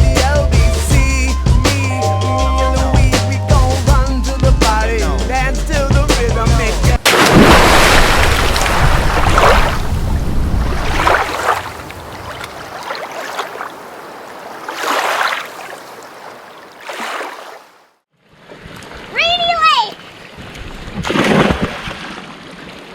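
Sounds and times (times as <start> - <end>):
water swishing: 7.0 - 19.4
wind: 7.0 - 22.9.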